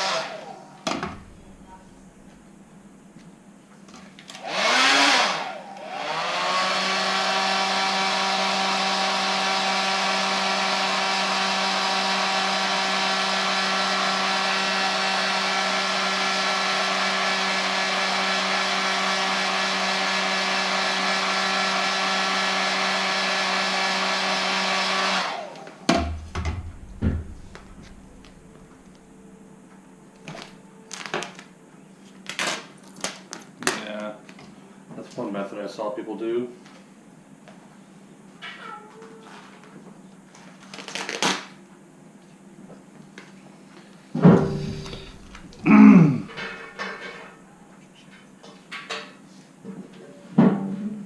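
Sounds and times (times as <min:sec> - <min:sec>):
heat gun fan hum: 0:04.3 - 0:30.7, 0:44.2 - 0:47.2
handling knocks: 0:25.9 - 0:28.3.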